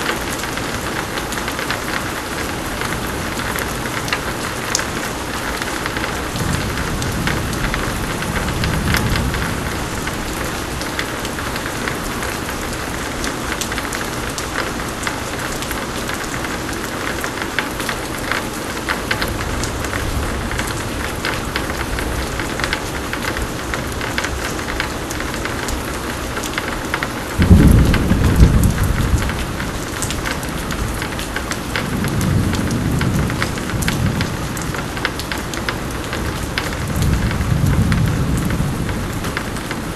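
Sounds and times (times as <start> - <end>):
pouring rain: 0.0 - 39.9
thunder rumbling: 6.1 - 13.6, 27.4 - 39.9
loud thunderclap: 6.3 - 10.8, 27.4 - 31.1, 31.8 - 34.9, 36.3 - 39.4.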